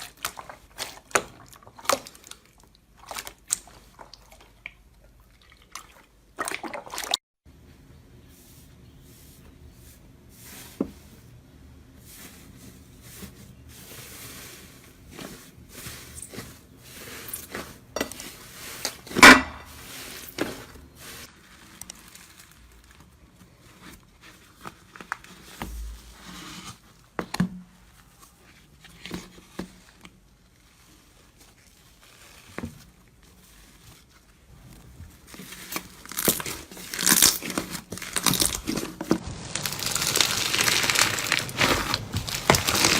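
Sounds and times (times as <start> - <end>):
material crinkling when squeezed: 12.1 - 27.0, 28.0 - 42.9.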